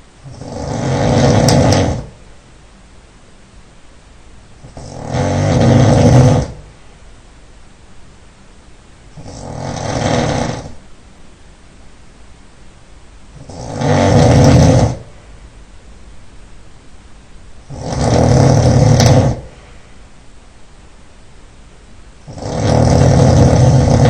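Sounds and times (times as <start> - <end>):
man snoring: 0.2 - 2.2, 4.6 - 6.6, 9.2 - 10.8, 13.4 - 15.1, 17.7 - 19.5, 22.3 - 24.0
quiet breathing: 19.0 - 20.2.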